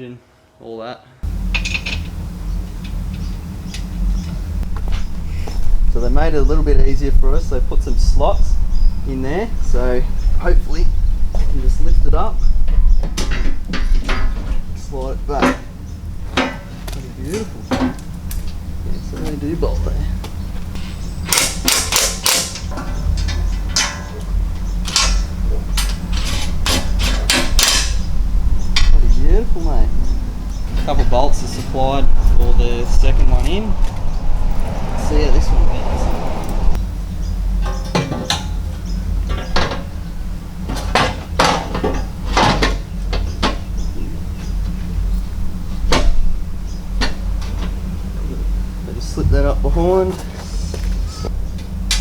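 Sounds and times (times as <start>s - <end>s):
steady low hum: 1.2s - 52.0s
low rumble: 2.2s - 16.4s, 22.7s - 37.6s
steel plate clanking: 15.4s - 18.6s, 21.2s - 28.1s
metallic clanks and scrapes: 24.9s - 28.1s.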